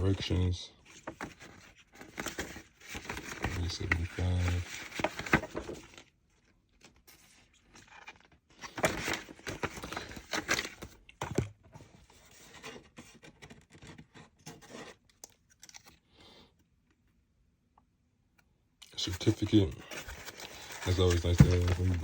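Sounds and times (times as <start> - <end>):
packaging rustling and crinkling: 0.9 - 6.1, 6.7 - 11.5, 19.2 - 22.0.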